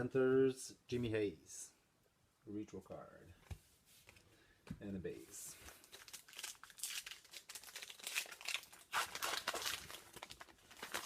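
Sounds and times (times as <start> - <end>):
plastic wrapper crinkling and tearing: 5.7 - 11.0.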